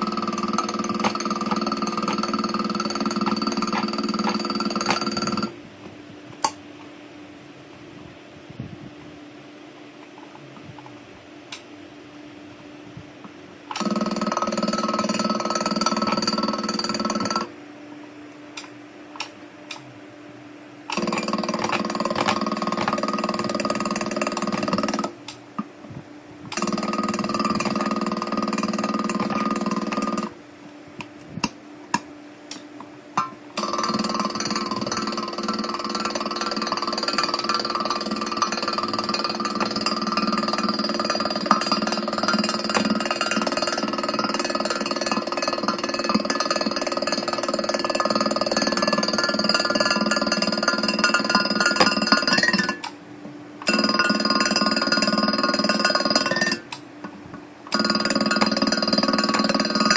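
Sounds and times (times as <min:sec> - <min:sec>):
welding machine clicks: 0:00.0 - 0:05.6, 0:13.7 - 0:17.5, 0:18.6 - 0:19.8, 0:20.9 - 0:25.4, 0:26.5 - 0:30.4, 0:31.4 - 0:53.0, 0:53.6 - 0:56.9, 0:57.7 - 0:59.9
welding machine humming: 0:00.0 - 0:05.6, 0:13.7 - 0:17.6, 0:20.8 - 0:25.7, 0:26.4 - 0:53.0, 0:53.6 - 0:56.9, 0:57.6 - 0:59.9.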